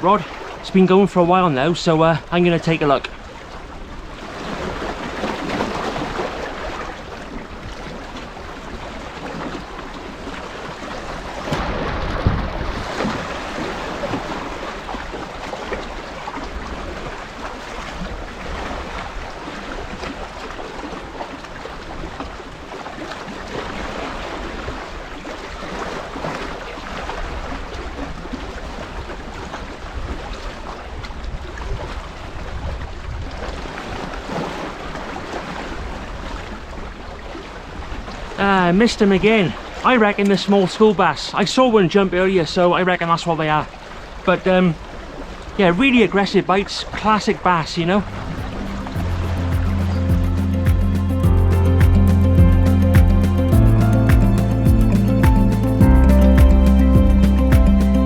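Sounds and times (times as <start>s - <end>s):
water washing against shore: 0.0s - 58.0s
wind buffeting microphone: 1.7s - 21.2s, 27.2s - 35.0s, 48.0s - 57.8s.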